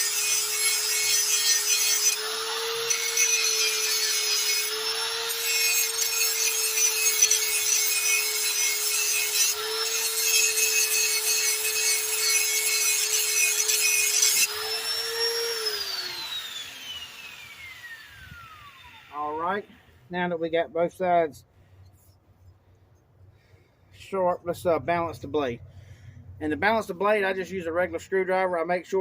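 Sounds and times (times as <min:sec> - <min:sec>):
grinder motor whine: 0:00.0 - 0:19.9.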